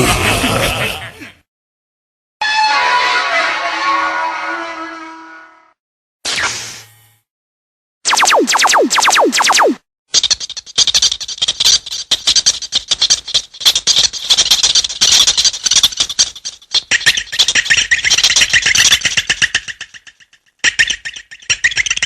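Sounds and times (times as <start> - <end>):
fast stuttering clicks: 8.1 - 20.2.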